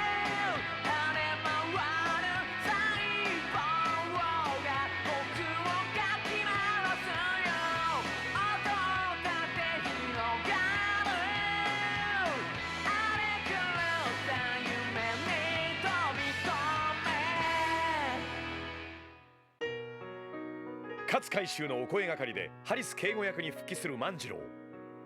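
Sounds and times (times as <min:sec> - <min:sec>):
rock song with sung vocal: 0:00.0 - 0:19.0.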